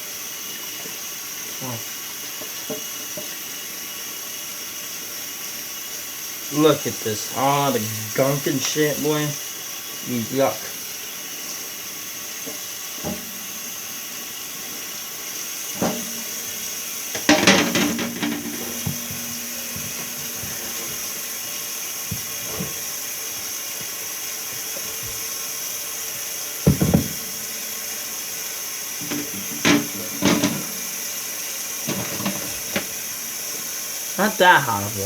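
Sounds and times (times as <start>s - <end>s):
tap water running into sink: 0.0s - 35.0s
scrubbing: 15.7s - 21.5s
plastic parts knocking: 17.2s - 21.1s, 29.0s - 30.9s.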